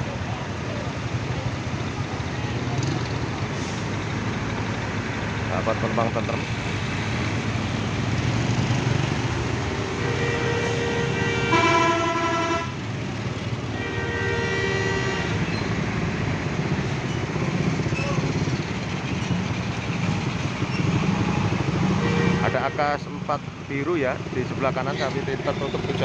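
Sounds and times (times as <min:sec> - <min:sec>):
bus engines rumbling: 0:00.0 - 0:26.0
bus horns honking: 0:09.5 - 0:16.0, 0:20.7 - 0:23.0.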